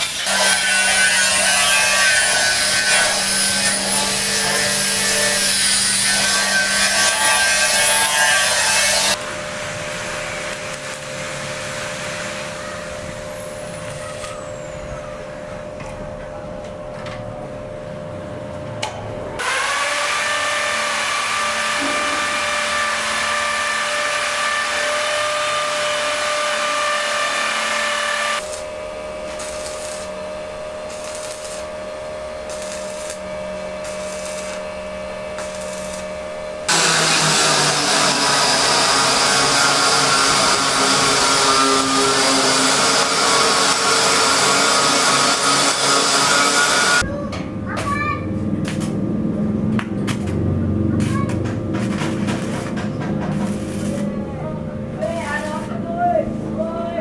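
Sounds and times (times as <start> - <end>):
power tool motors whining: 19.4 - 47.0.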